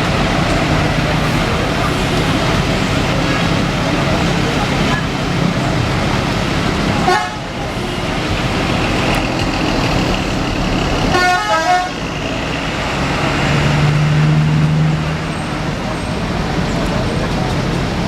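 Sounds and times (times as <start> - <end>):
bus engines rumbling: 0.0 - 18.0
bus horn blasts: 6.8 - 9.1, 11.0 - 12.0.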